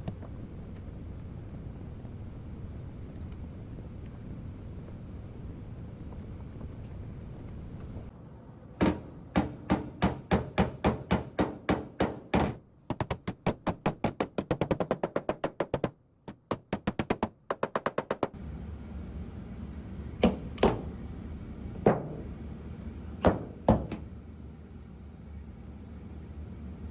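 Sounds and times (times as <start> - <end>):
hammer tapping on car door: 8.8 - 15.9, 23.2 - 24.0.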